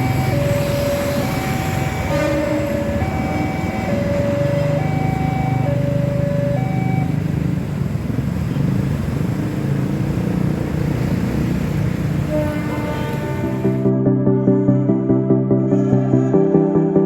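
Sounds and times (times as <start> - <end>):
two-note crossing alarm chime: 0.0 - 7.2
road traffic rumble: 0.0 - 14.0.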